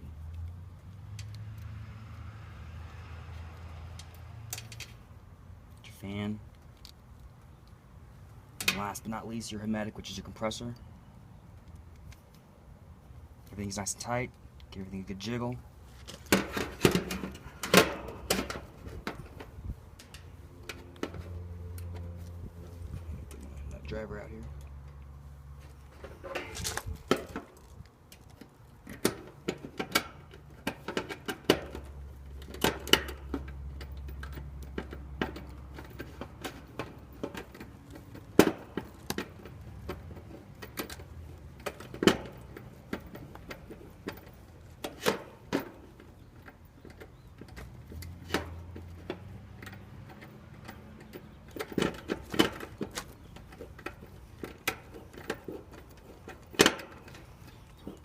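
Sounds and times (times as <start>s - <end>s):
metallic clicks and clanks of hand tools: 2.8s - 5.0s, 8.6s - 9.0s, 16.0s - 25.2s, 25.9s - 58.0s.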